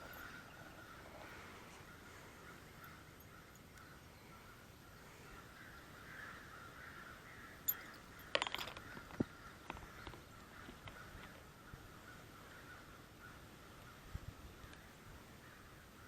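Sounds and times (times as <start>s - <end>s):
crows cawing: 0.1s - 8.1s.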